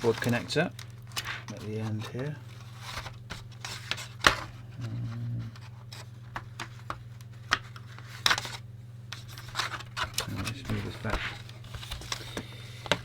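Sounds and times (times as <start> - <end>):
clicks and scrapes of plastic case: 0.0 - 4.5, 9.2 - 13.0
low steady hum: 0.0 - 13.0.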